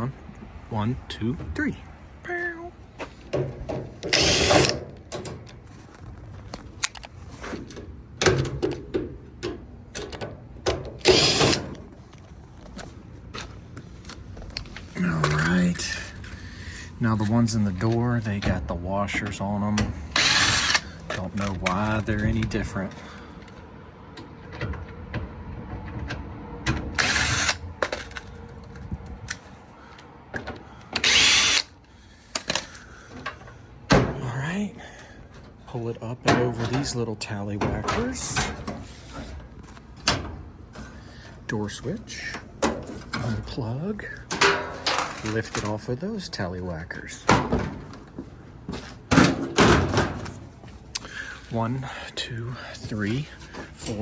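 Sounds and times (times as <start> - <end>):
power drill spinning out screws: 4.1 - 4.8, 11.0 - 11.7, 20.1 - 21.0, 26.9 - 28.0, 31.0 - 31.7
screws clicking and clattering: 4.1 - 4.8, 31.0 - 31.7.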